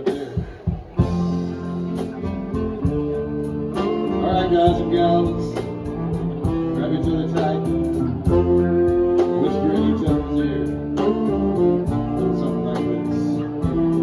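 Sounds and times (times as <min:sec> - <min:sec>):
guitar: 0:00.0 - 0:14.0
live swing band playing: 0:00.0 - 0:14.0.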